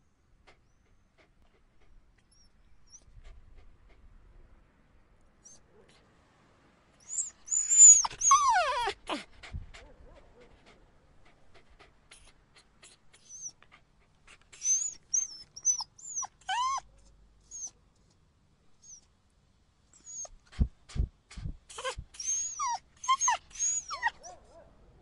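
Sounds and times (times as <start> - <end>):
puppy whining and whimpering: 7.0 - 9.3, 13.2 - 13.6, 14.6 - 16.9, 17.5 - 17.8, 20.0 - 20.4, 21.7 - 24.3.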